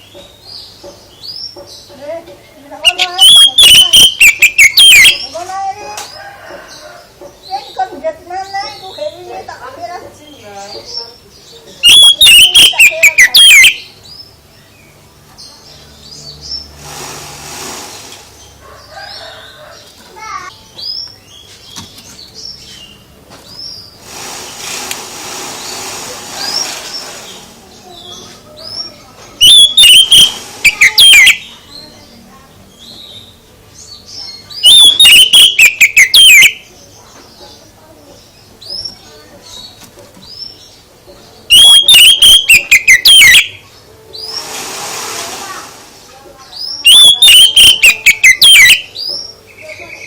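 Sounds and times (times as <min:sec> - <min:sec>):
bird trilling and warbling: 0:02.8 - 0:05.4, 0:11.8 - 0:13.9, 0:23.6 - 0:31.8, 0:34.4 - 0:36.7, 0:41.5 - 0:43.6, 0:46.5 - 0:50.0
faint bird chirps: 0:02.9 - 0:05.4, 0:26.4 - 0:33.4, 0:34.0 - 0:44.5, 0:46.4 - 0:50.0.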